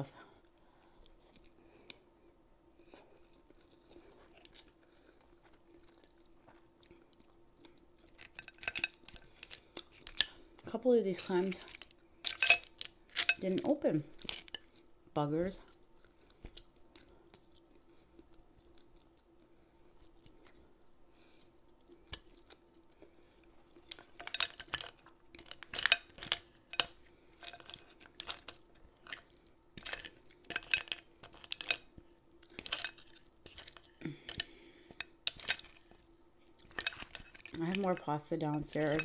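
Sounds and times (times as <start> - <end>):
faint steady hum: 0.0 - 39.0
chewing pasta: 0.3 - 10.7, 11.3 - 13.4, 14.0 - 39.0
cutlery and shells clinking on dish: 8.2 - 10.3, 11.2 - 13.6, 24.0 - 29.2, 29.8 - 31.9, 32.6 - 36.0, 36.6 - 38.0, 38.6 - 39.0.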